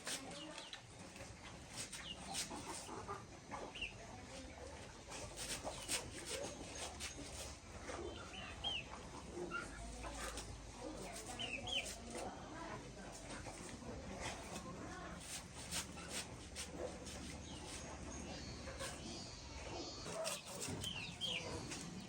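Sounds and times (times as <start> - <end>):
chickens clucking: 0.0 - 22.0.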